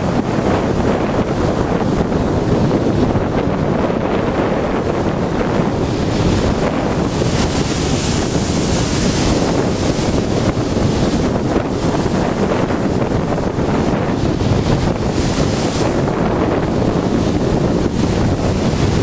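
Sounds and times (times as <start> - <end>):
storm waves breaking: 0.0 - 19.0
wind buffeting microphone: 0.0 - 19.0.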